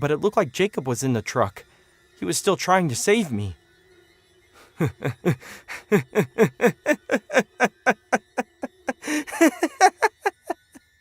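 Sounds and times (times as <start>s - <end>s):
person laughing: 4.6s - 10.8s.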